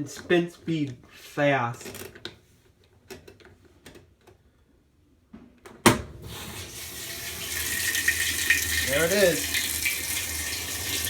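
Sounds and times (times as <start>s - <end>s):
water rushing into tub: 6.2s - 11.0s.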